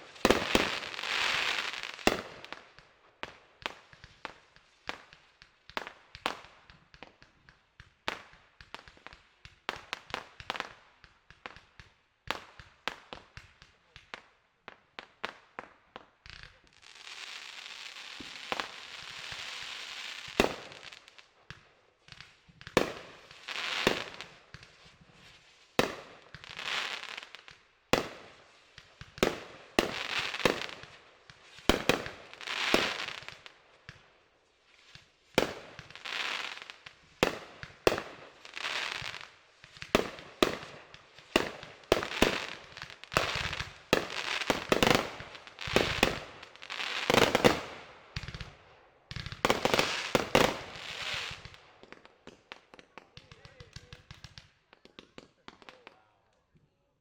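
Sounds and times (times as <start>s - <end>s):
fireworks bangs: 0.0s - 2.5s, 34.9s - 56.0s
fireworks crackling: 0.0s - 56.1s.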